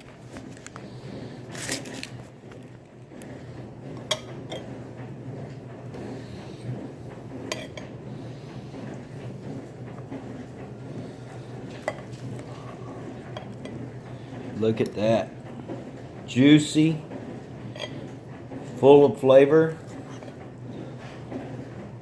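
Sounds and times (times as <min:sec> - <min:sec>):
cutlery clinking against plate: 0:04.0 - 0:04.7, 0:07.5 - 0:07.9.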